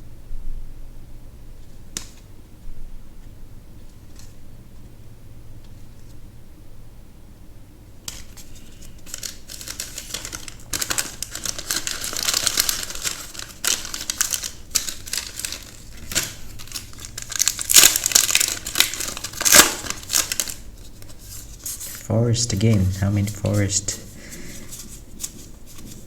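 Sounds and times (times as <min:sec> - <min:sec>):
foil wrapper crinkling and tearing: 0:08.1 - 0:22.0.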